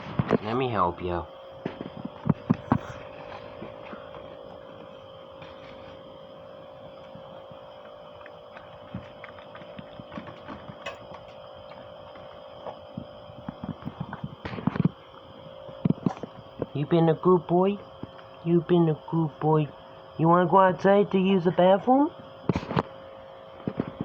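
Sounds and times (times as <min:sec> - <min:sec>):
steady hum: 0:00.0 - 0:24.0.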